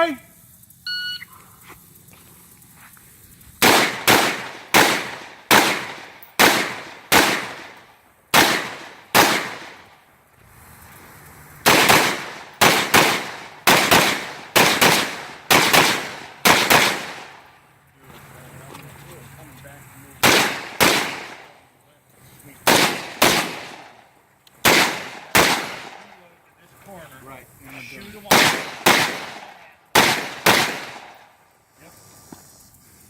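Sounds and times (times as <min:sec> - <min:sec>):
shot timer beep: 0:00.8 - 0:01.3
rifle shots: 0:03.6 - 0:09.9, 0:11.6 - 0:17.5, 0:20.2 - 0:21.5, 0:22.6 - 0:24.0, 0:24.6 - 0:26.2, 0:28.2 - 0:31.3.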